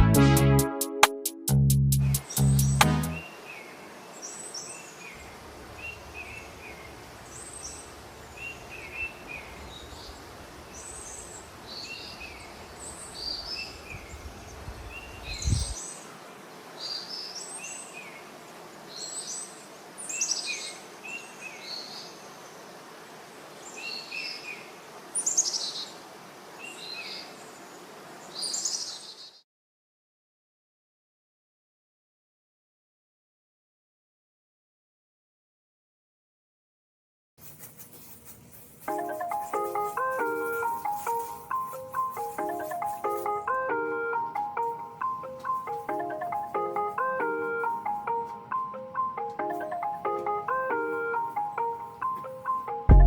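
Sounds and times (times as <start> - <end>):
small birds chirping: 2.0 - 22.6, 23.6 - 26.0, 26.6 - 29.4, 37.4 - 53.0.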